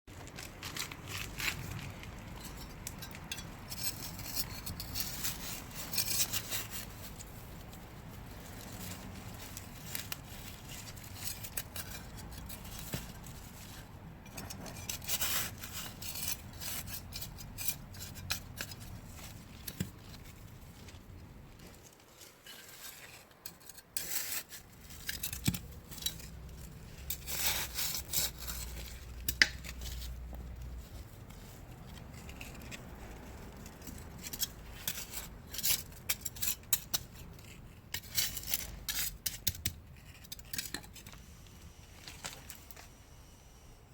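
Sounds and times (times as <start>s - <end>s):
hands scraping garden soil: 0.5s - 43.0s.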